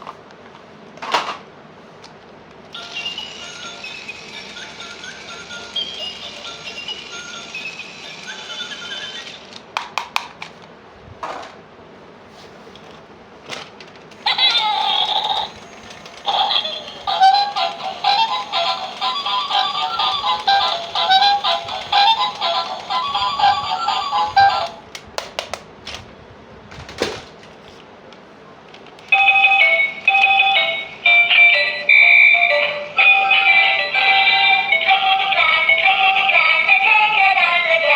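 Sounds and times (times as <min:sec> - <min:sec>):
high electronic melody: 0:16.7 - 0:24.8, 0:29.2 - 0:37.9.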